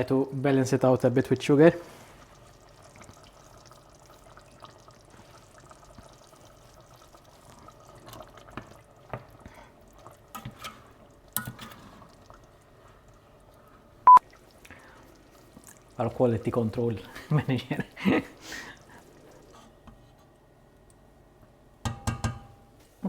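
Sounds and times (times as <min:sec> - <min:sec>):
curry bubbling in a pot: 0:01.2 - 0:21.5
spoon clicking against pot: 0:21.9 - 0:22.6.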